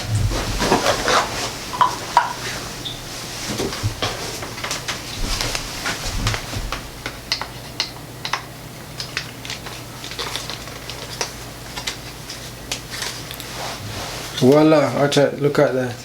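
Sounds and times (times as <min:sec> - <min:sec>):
steady low hum: 0:00.0 - 0:08.2.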